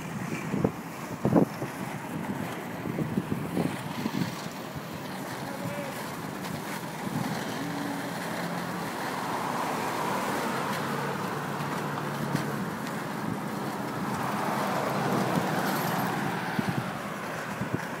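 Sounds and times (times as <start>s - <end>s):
vehicles passing: 0.0s - 18.0s.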